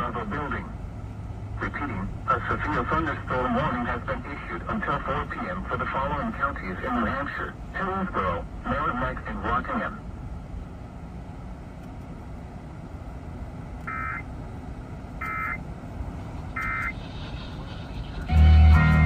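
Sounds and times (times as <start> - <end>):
radio broadcast hiss: 0.0 - 0.8, 1.6 - 10.0, 16.5 - 18.4
loud low hum with higher tones: 0.0 - 19.0.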